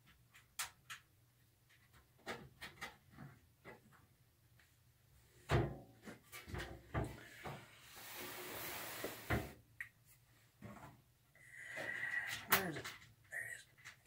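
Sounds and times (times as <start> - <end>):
metal hissing scrape: 7.3 - 9.5.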